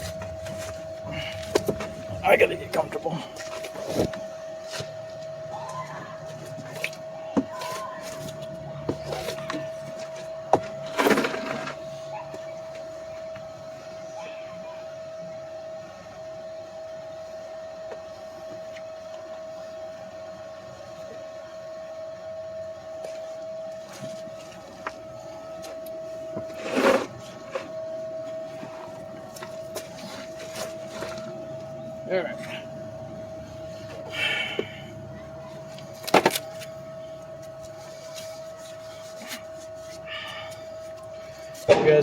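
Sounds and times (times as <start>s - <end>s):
constant hum: 0.0s - 42.0s.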